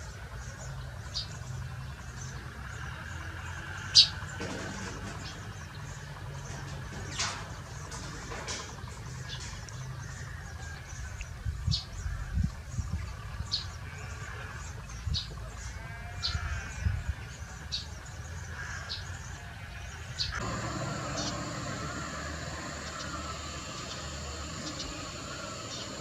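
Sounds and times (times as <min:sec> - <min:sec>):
sparrows chirping: 0:19.9 - 0:26.0
low rumble: 0:20.4 - 0:26.0
steady high buzz: 0:20.4 - 0:26.0.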